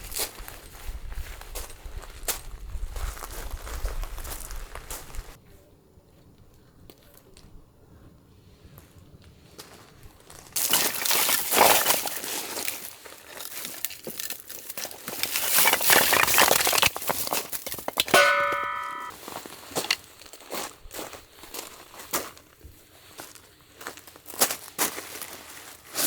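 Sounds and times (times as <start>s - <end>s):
loud crackling and crinkling: 10.3s - 18.1s
metal ding: 18.1s - 19.1s.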